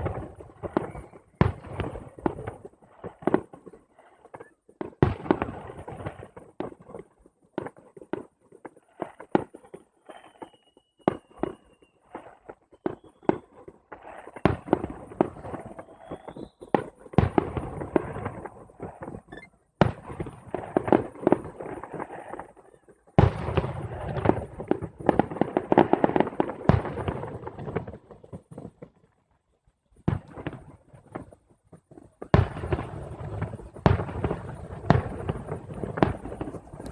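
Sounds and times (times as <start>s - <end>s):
fireworks bangs: 0.0s - 29.1s, 30.0s - 36.9s
fireworks crackling: 0.0s - 29.2s, 30.0s - 36.9s
firework whistle: 10.0s - 17.0s, 19.2s - 19.7s.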